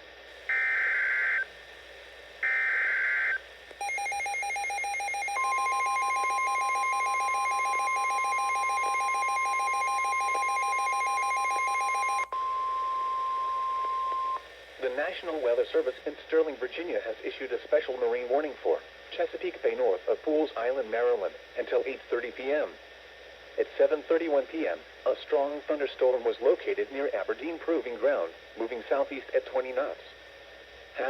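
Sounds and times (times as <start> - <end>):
pulsing buzzing receiver alarm: 0.5 - 1.4, 2.4 - 14.4
steady warning alarm tone: 2.4 - 14.4.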